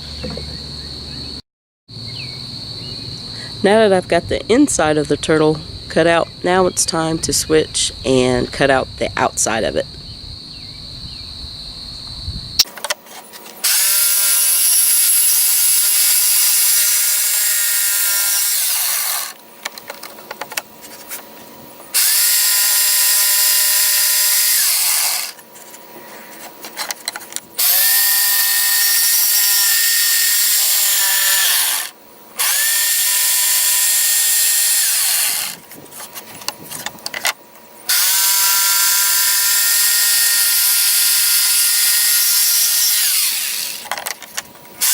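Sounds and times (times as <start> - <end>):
electric jigsaw cutting plywood: 13.6 - 19.4, 21.9 - 25.4, 27.6 - 35.6, 37.9 - 43.9.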